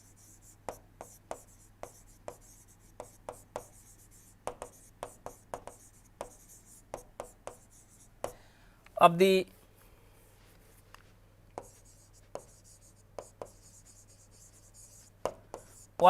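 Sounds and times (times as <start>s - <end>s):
pen scratching while writing: 0.0s - 8.4s, 11.6s - 16.0s.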